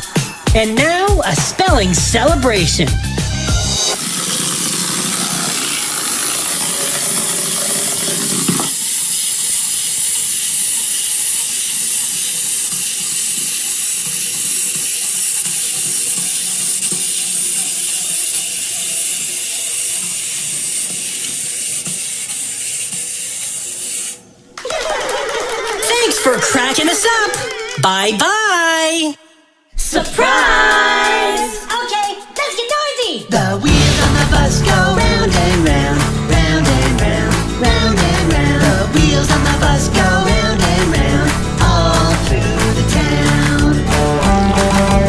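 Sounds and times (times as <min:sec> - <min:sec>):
loud hissing: 0:33.6 - 0:45.0.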